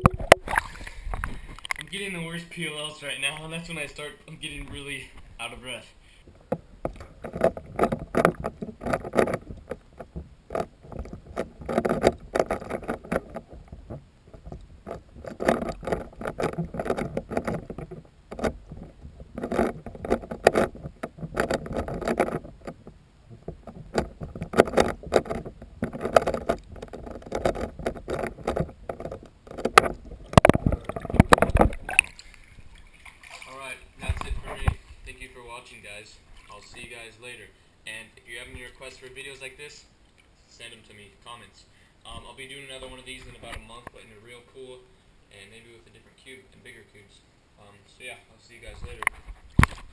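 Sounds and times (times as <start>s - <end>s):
bathwater sloshing: 0.0s - 2.3s, 6.3s - 35.6s, 36.2s - 37.0s.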